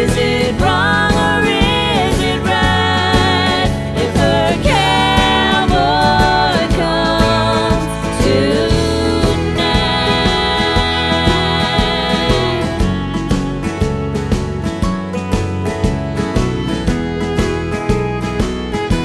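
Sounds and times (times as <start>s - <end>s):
person singing: 0.0s - 13.4s
country or gospel music: 0.0s - 19.0s.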